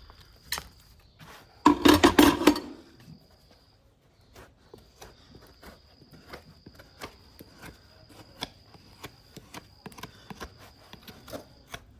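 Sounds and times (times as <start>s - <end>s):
tools scraping hoof: 1.4s - 3.1s.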